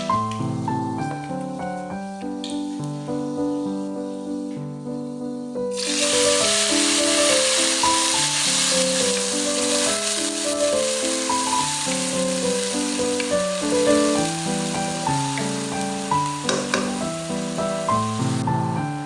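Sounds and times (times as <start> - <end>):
instrumental background music: 0.0 - 19.0
food sizzling in hot oil: 5.7 - 19.0.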